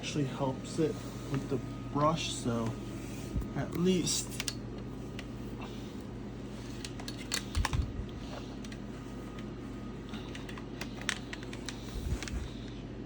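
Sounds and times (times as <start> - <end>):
steady low hum: 0.0 - 13.0
plastic parts clicking and tapping: 6.8 - 7.9, 10.2 - 12.4.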